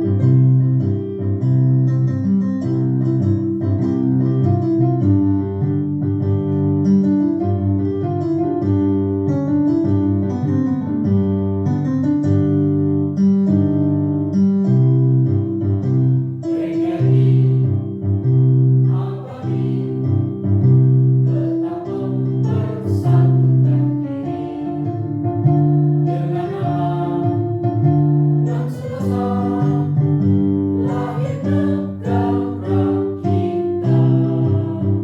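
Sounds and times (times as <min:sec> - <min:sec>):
children's choir singing: 0:16.4 - 0:17.9, 0:18.9 - 0:20.3, 0:21.3 - 0:25.0, 0:26.1 - 0:27.6, 0:28.5 - 0:35.0.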